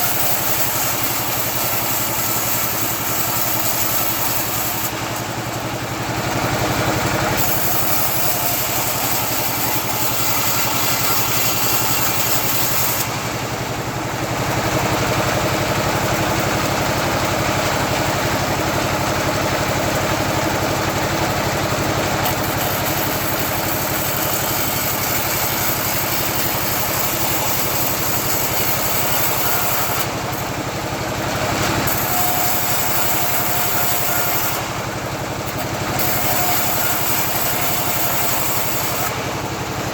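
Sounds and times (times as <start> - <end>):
bandsaw sawmill drone: 0.0 - 39.9
high hiss of saw blade: 7.4 - 13.5.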